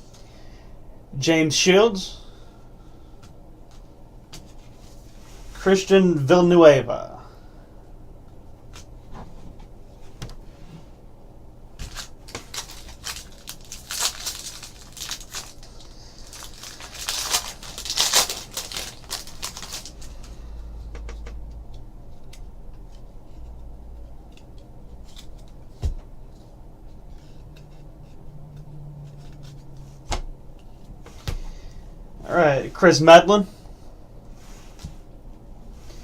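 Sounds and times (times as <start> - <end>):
foil pack tearing and crinkling: 11.8 - 20.3.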